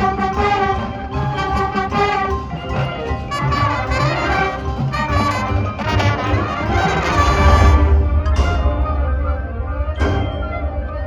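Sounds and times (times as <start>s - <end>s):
brass band sustained chords: 0.0s - 11.0s
low bass notes: 4.6s - 11.0s.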